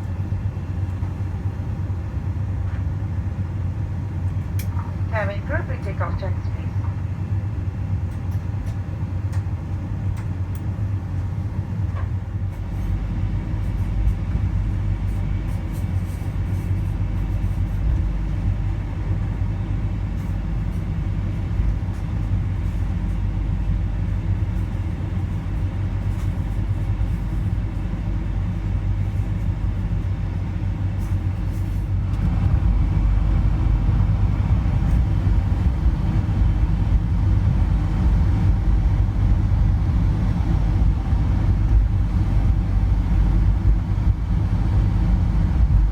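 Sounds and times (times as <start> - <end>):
jet engine rumble in cabin: 0.0 - 45.9.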